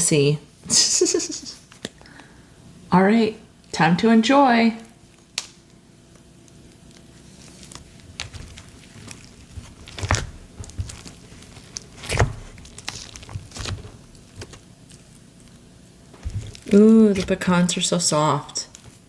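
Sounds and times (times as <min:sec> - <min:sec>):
slime squelches: 0:06.7 - 0:19.0.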